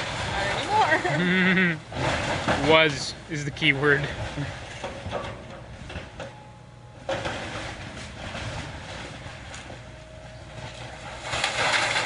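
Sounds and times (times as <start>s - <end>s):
demolition machine rumbling: 0.0s - 12.0s
crunching debris: 7.0s - 12.0s.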